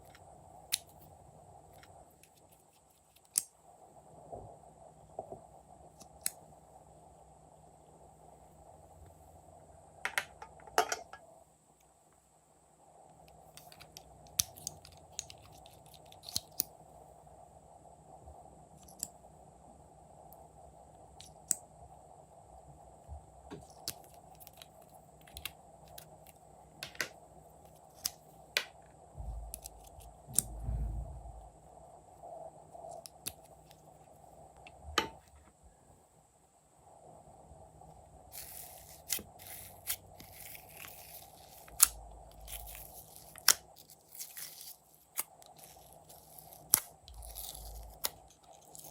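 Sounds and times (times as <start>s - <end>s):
dull low thump: 29.2s - 29.6s, 30.3s - 31.5s.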